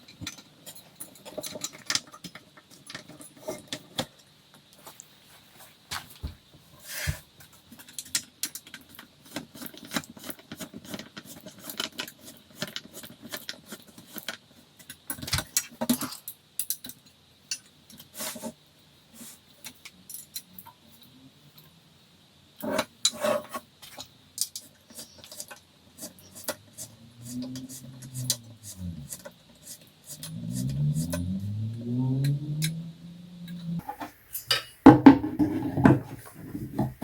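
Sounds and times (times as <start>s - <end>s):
furniture parts knocking: 34.9s - 37.0s.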